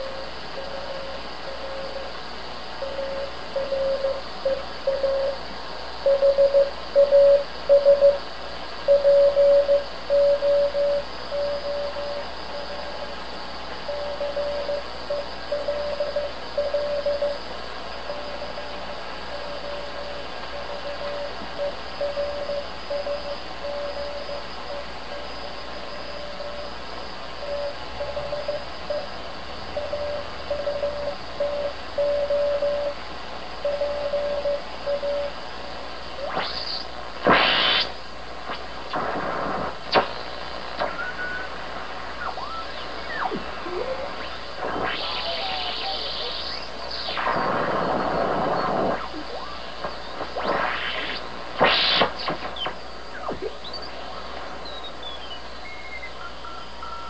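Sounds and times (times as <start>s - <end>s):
shortwave static bursts: 0.0s - 56.8s
receiver hiss: 0.0s - 57.0s
morse code beeping tone: 55.7s - 57.0s.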